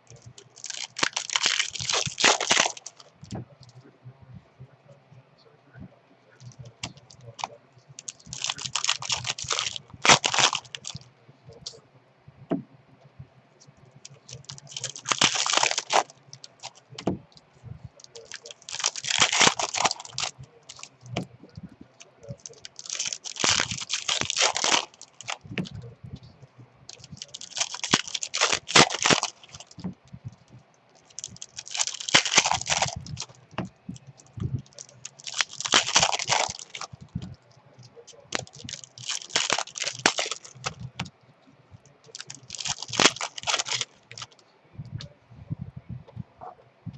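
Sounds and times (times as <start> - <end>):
foil wrappers tearing and crinkling: 0.0 - 3.4, 6.6 - 11.0, 14.0 - 17.1, 18.0 - 21.3, 22.3 - 25.7, 26.9 - 29.9, 31.0 - 37.3, 38.2 - 41.1, 42.0 - 44.4.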